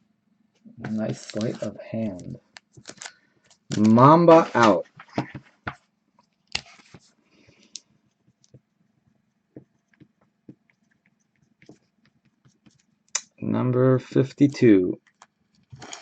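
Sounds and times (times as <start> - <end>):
cards and plastic holders handled: 0.8 - 5.8.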